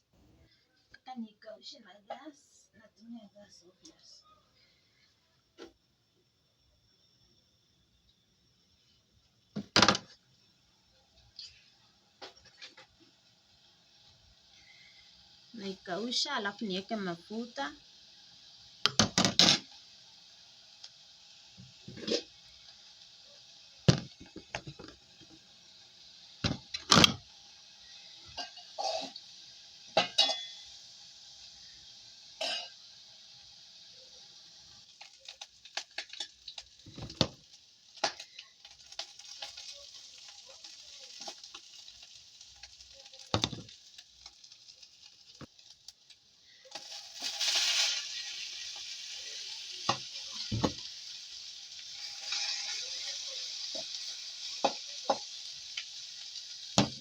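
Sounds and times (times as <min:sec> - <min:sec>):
fish sizzling and crackling: 0:04.6 - 0:57.0
spoon scraping a pan: 0:21.8 - 0:22.4, 0:30.0 - 0:30.7, 0:46.8 - 0:48.9, 0:52.0 - 0:55.4.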